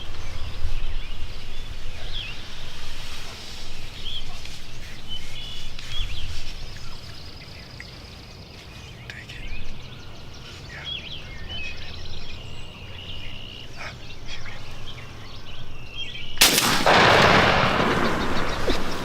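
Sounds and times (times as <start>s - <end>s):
small birds chirping: 0.0s - 19.0s
shotgun blast: 16.4s - 19.0s.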